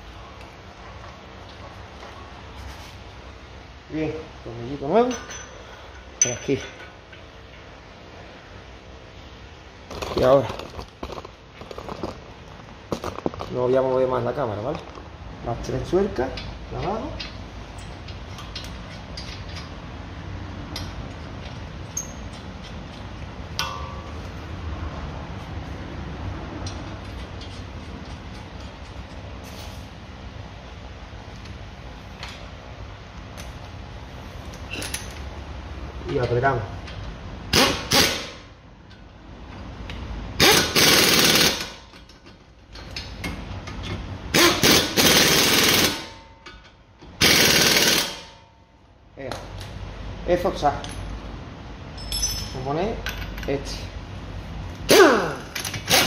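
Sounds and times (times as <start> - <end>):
metal nuts and tools clinking: 5.0 - 7.7, 16.2 - 19.8, 20.6 - 24.2, 34.5 - 35.3, 51.9 - 53.8
pneumatic ratchet rattling: 36.9 - 38.5, 40.4 - 48.3, 54.9 - 56.0
sharp ringing metal clink: 52.0 - 52.7.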